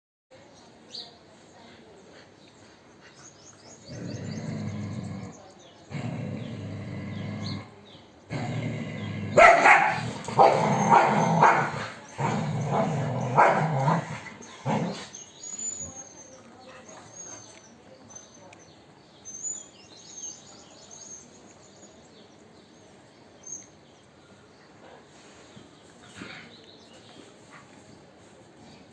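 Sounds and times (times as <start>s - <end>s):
puppies growling: 3.0s - 15.9s.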